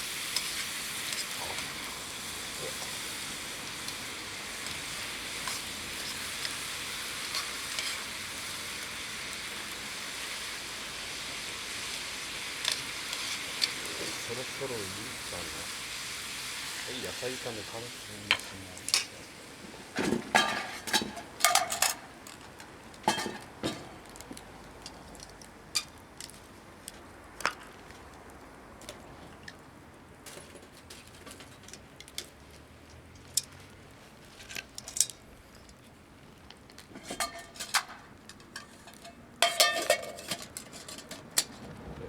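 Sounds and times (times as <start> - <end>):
cookware clinking together: 20.4 - 22.0, 23.1 - 23.8, 37.0 - 41.2.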